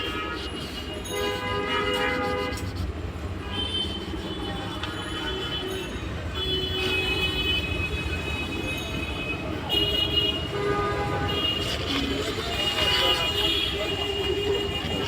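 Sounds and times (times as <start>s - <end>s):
road traffic rumbling: 0.0s - 15.0s.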